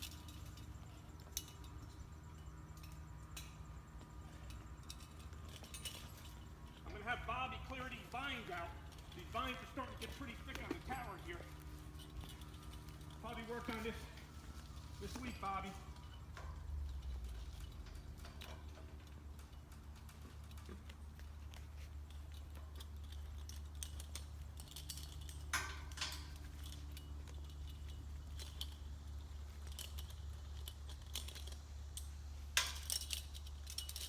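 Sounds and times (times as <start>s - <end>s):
metal tools clinking and jingling: 0.0s - 34.0s
steady low hum: 0.0s - 34.0s.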